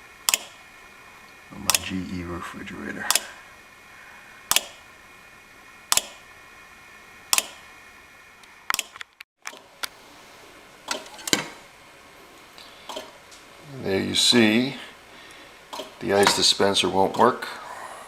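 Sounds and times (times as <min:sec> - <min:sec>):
refrigerator control board clicking: 0:04.5 - 0:04.8.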